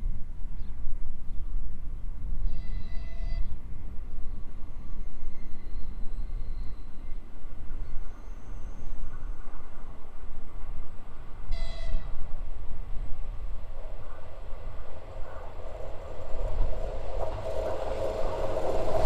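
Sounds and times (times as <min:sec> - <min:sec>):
diesel locomotive rumbling: 0:08.4 - 0:19.0.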